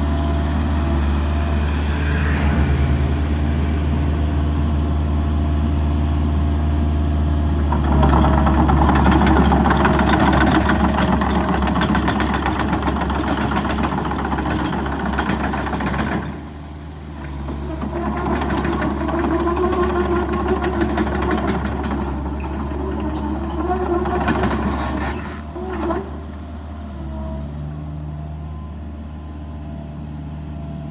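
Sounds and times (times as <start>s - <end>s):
hydraulic whine: 0.0s - 30.0s
excavator diesel engine running: 0.0s - 30.9s.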